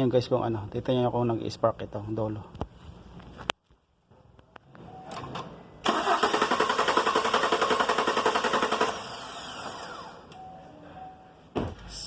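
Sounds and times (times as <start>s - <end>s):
engine cranking by starter: 5.2s - 10.2s.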